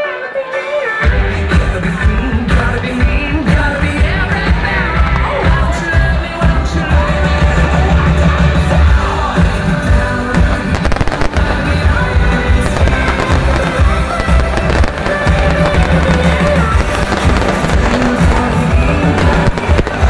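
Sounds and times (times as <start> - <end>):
loud music: 0.0 - 20.0
fireworks booming and crackling: 7.6 - 20.0.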